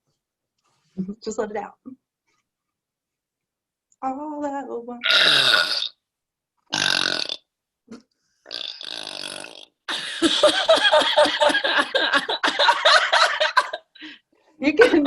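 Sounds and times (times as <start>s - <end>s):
woman burping: 5.0s - 5.9s.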